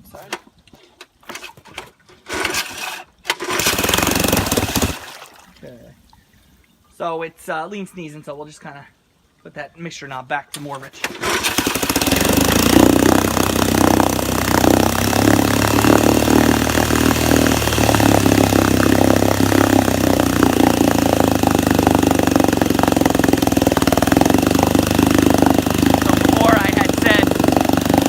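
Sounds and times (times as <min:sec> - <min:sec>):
outboard motor running: 0:03.5 - 0:05.0, 0:10.6 - 0:28.0.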